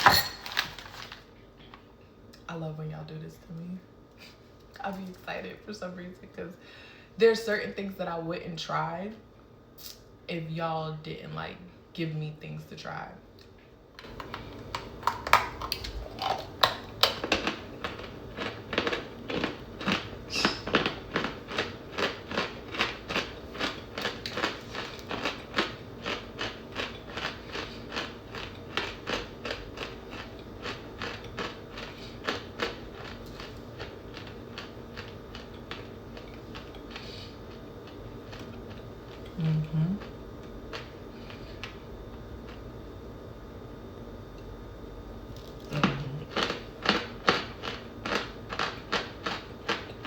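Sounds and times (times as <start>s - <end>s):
crunching chewing: 14.0s - 39.4s, 40.0s - 42.7s, 45.3s - 50.0s.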